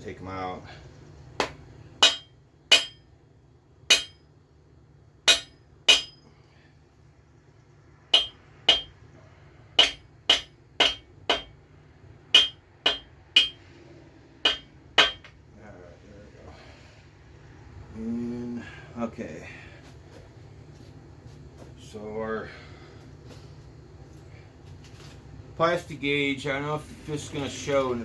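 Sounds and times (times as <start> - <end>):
sharp metallic taps: 1.4 - 3.0, 3.9 - 4.2, 5.3 - 6.2, 8.2 - 9.0, 9.8 - 11.6, 12.4 - 13.6, 14.5 - 15.4.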